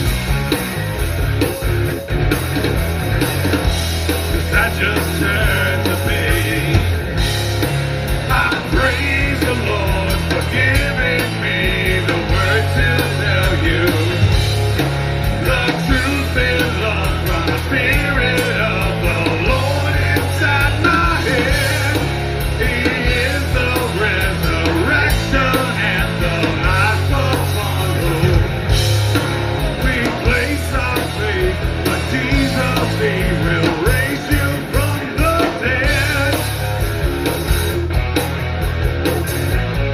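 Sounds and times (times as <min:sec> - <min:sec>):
live rock band playing: 0:00.0 - 0:39.9
person singing: 0:04.5 - 0:06.9, 0:08.3 - 0:14.3, 0:29.7 - 0:36.6.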